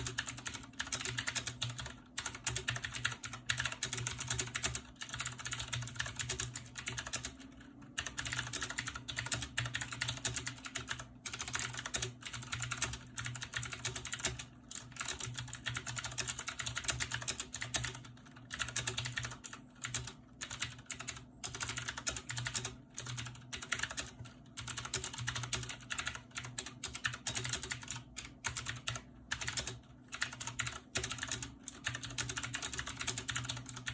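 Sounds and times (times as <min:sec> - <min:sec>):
clicky keyboard typing: 0:00.0 - 0:33.9.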